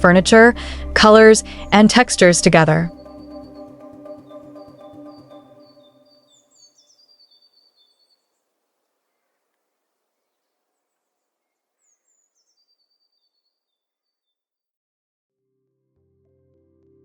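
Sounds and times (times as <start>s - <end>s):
soft ambient music: 0.0s - 6.9s
faint bird chirps: 2.9s - 8.4s, 11.4s - 14.2s.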